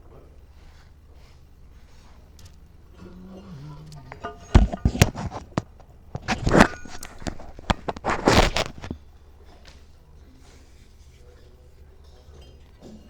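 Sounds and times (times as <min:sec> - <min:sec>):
metal parts clanking and scraping: 0:04.0 - 0:09.0.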